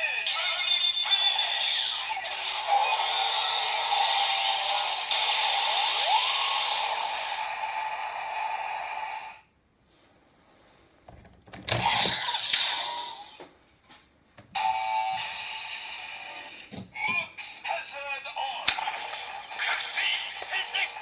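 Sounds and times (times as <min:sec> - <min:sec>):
toy electronic sound effects: 0:00.0 - 0:07.7, 0:11.8 - 0:13.4, 0:14.6 - 0:21.0
sharp clicks: 0:18.7 - 0:20.5.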